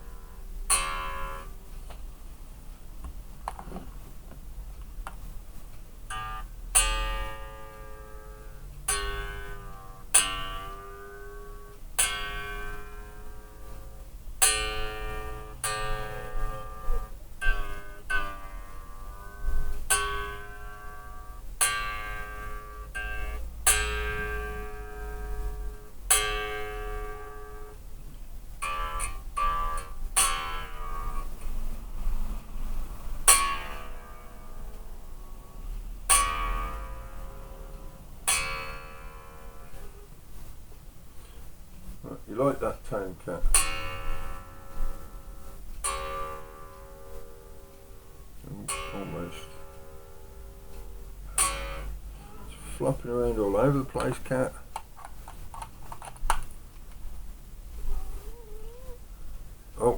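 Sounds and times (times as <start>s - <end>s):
bass guitar strings plucked: 6.1s - 27.7s, 42.9s - 54.4s.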